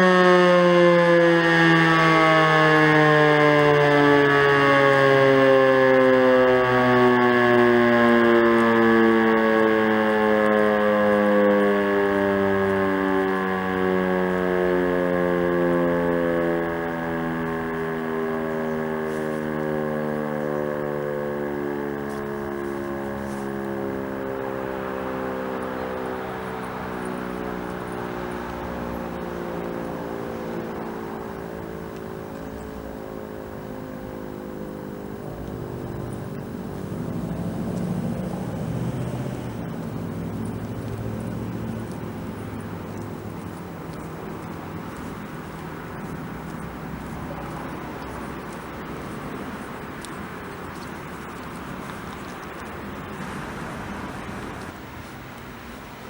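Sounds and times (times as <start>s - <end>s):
siren winding down: 0.0s - 49.1s, 51.8s - 54.8s
low rumble: 53.0s - 54.8s.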